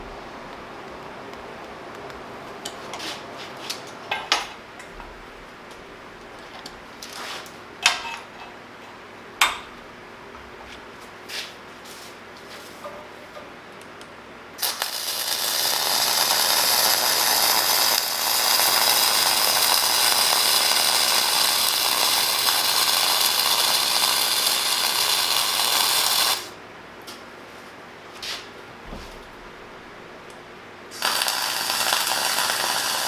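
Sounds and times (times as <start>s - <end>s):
welding arc: 14.6s - 26.6s, 30.9s - 33.0s.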